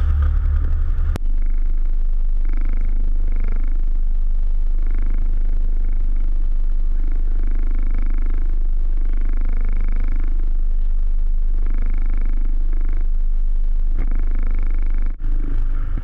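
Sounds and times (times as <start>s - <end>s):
motorboat engine droning: 0.0s - 1.2s.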